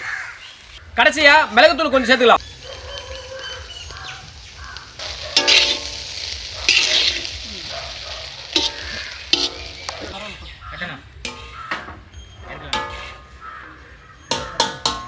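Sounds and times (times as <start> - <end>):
rice sizzling in hot pan: 2.4 - 10.5
metal spatula scraping rice: 5.0 - 10.4, 11.3 - 13.5
spatula knocking against pan: 8.6 - 9.9, 14.3 - 15.0.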